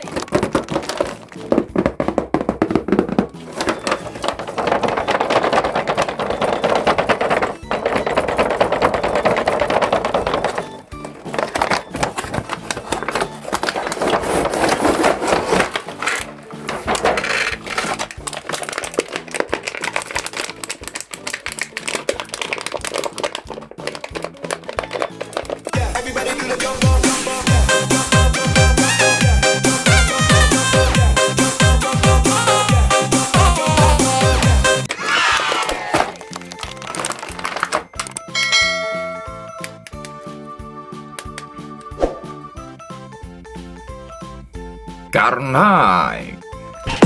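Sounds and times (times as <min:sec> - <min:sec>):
hard plastic clicking and rattling: 0:00.0 - 0:25.8, 0:35.4 - 0:40.2
background music: 0:00.0 - 0:47.0
background music with bass: 0:25.8 - 0:34.9.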